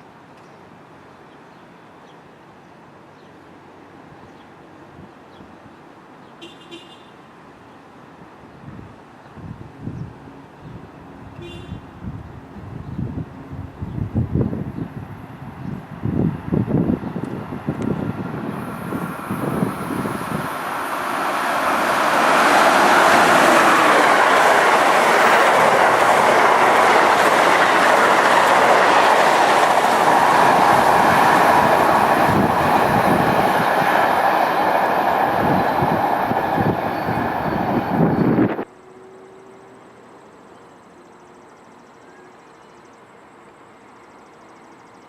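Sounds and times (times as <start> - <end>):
wind buffeting microphone: 8.6 - 38.7
train wheels rushing on rail: 13.6 - 38.7.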